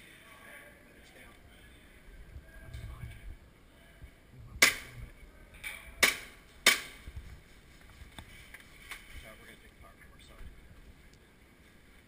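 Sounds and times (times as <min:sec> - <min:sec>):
airsoft gun shots: 0:04.6 - 0:05.0, 0:06.0 - 0:07.0.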